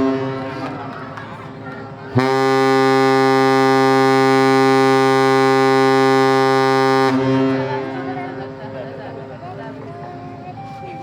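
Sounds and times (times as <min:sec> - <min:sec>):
ship's horn long low blast: 0:00.0 - 0:00.6, 0:02.2 - 0:08.6.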